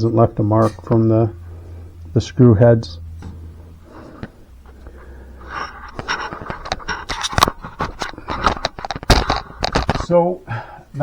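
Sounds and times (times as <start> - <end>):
scraping: 0.0 - 10.1
sharp clicks and knocks: 3.0 - 10.1.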